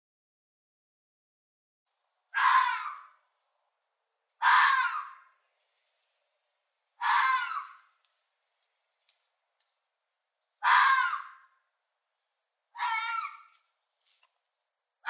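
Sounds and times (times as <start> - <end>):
animal's harsh hoarse scream: 2.4 - 3.1, 4.4 - 5.2, 7.0 - 7.8, 10.6 - 11.5, 12.8 - 13.5.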